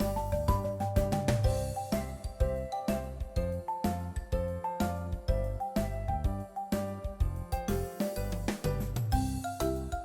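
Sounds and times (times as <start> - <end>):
cheerful children's music: 0.0 - 10.0.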